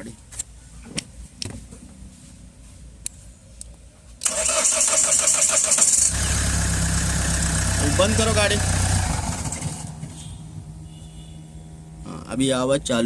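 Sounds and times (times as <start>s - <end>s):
starter motor cranking engine: 4.2s - 10.1s.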